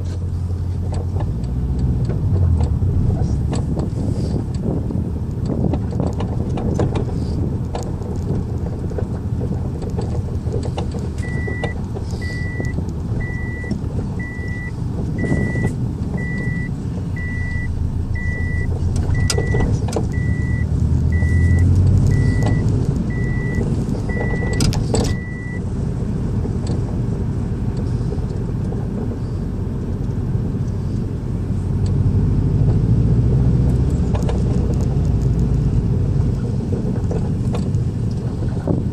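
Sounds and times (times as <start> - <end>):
car road and engine rumble: 0.0 - 38.9
repeating beep: 11.2 - 25.6.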